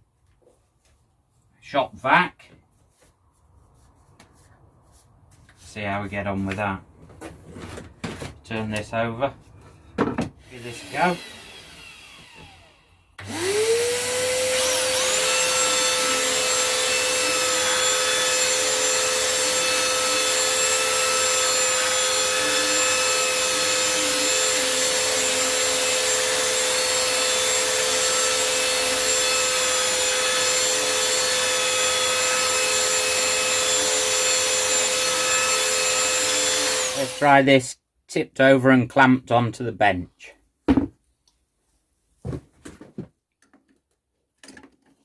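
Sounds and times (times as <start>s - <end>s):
belt sander motor whine: 10.4s - 37.2s.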